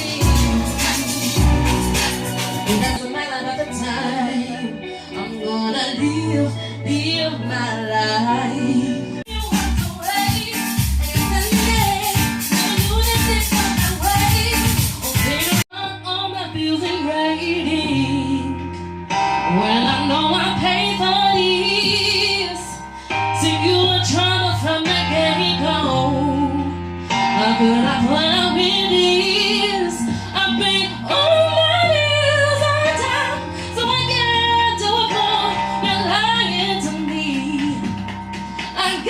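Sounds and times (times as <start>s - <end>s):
live band accompaniment: 0.0s - 6.3s, 9.2s - 15.6s, 27.1s - 39.0s
woman singing with vibrato: 0.0s - 18.7s, 19.5s - 38.0s, 38.7s - 39.0s.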